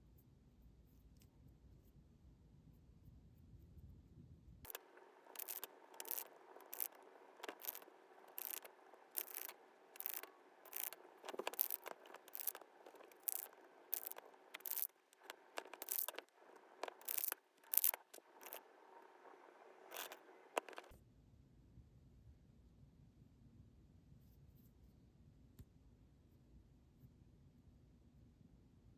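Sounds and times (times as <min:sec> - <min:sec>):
hand tool scraping clay: 0:04.7 - 0:20.9.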